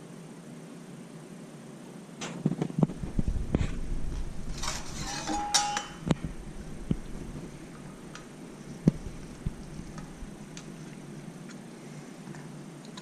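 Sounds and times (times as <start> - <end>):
metal fittings clinking: 4.5 - 6.0
scraping rattle: 4.5 - 6.0.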